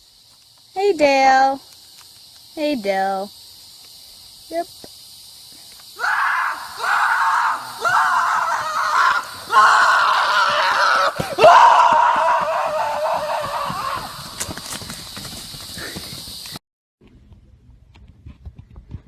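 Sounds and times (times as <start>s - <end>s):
person screaming: 6.0s - 14.2s.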